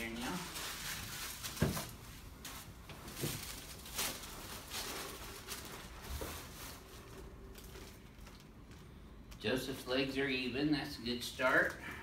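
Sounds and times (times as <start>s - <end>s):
clothing rustling: 0.0s - 9.1s.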